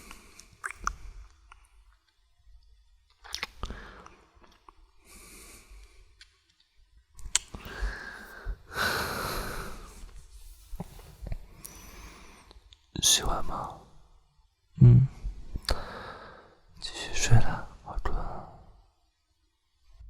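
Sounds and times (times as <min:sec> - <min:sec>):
man breathing slowly: 0:05.0 - 0:06.1, 0:07.6 - 0:12.6, 0:15.7 - 0:16.6.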